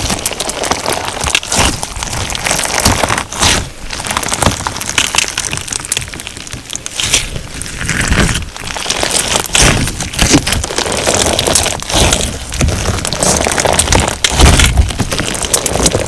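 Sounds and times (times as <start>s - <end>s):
crunchy slime crackling and popping: 0.0s - 16.0s.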